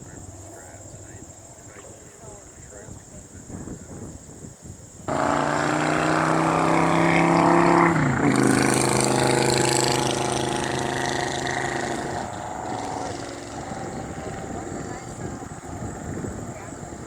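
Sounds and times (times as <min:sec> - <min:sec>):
loud buzzing hum: 0:05.1 - 0:17.0.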